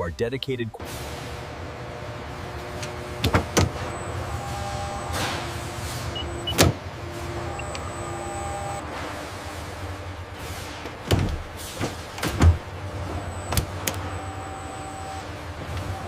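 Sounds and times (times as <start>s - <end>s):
industrial machinery humming: 0.8s - 16.0s
faint whining tones: 1.3s - 10.2s, 12.3s - 16.0s.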